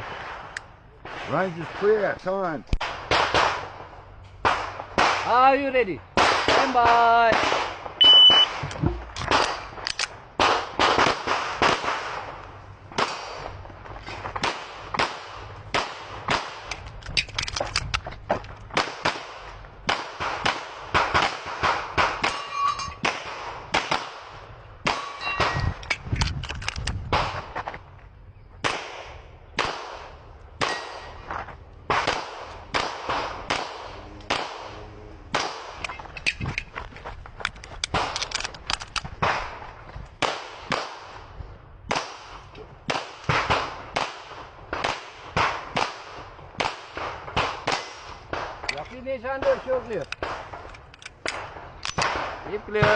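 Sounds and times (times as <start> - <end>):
metallic ring of steel targets: 22.2 - 23.1, 24.9 - 25.9.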